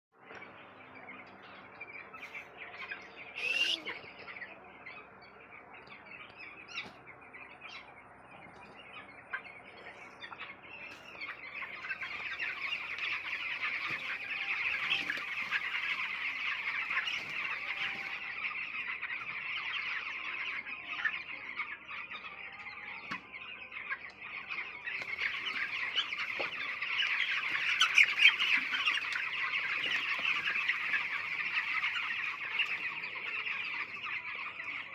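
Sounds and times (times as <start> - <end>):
chickens clucking: 0.2 - 34.9
chicken squawk: 2.2 - 4.3, 11.2 - 19.8, 24.4 - 34.9.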